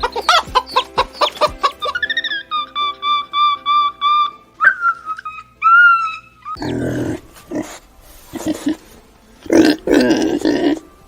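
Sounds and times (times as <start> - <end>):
pig grunting and oinking: 6.5 - 11.0.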